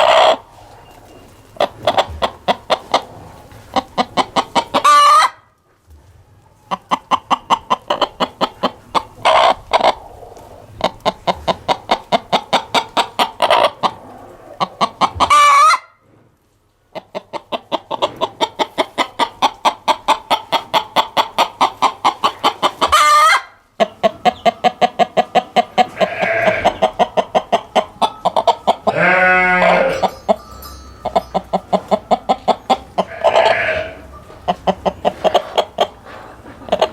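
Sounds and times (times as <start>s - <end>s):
chicken squawking: 0.0s - 1.0s, 3.7s - 5.5s, 6.7s - 11.7s, 13.2s - 15.9s, 22.2s - 23.6s, 25.6s - 30.1s, 31.7s - 36.9s
chickens clucking: 0.0s - 36.9s
rooster crowing: 28.9s - 30.1s, 33.1s - 34.1s.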